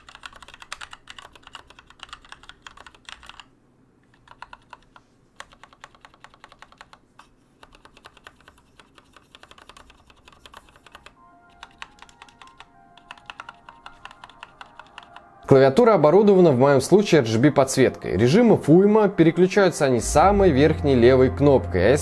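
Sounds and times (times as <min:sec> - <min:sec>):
mechanical keyboard key clacks: 0:00.0 - 0:03.5, 0:04.2 - 0:07.0, 0:07.6 - 0:15.2.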